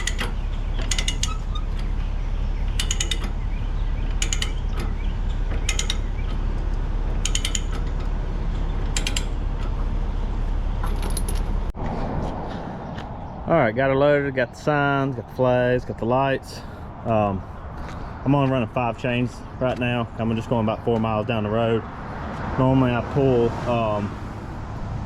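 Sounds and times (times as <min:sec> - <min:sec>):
metal chains clanking and ratcheting: 0:00.0 - 0:01.9, 0:02.7 - 0:03.4, 0:04.1 - 0:06.4, 0:07.2 - 0:08.1, 0:08.9 - 0:09.7, 0:10.8 - 0:11.6
diesel truck engine idling: 0:00.0 - 0:11.8.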